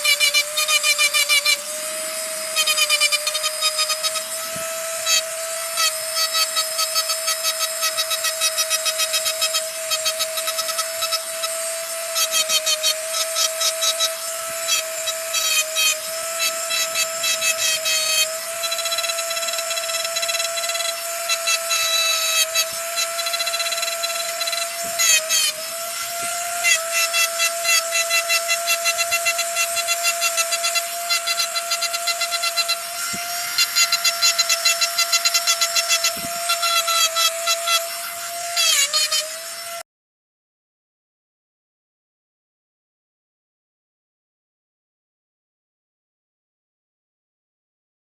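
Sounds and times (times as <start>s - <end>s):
electric grinder whining: 0.0s - 39.8s
grinder rasping pulses: 0.0s - 39.8s.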